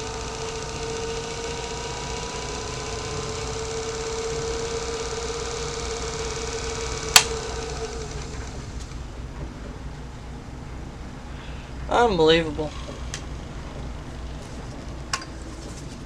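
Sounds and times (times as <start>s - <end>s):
electric motor whine: 0.0s - 9.3s
sharp click: 7.2s - 7.4s.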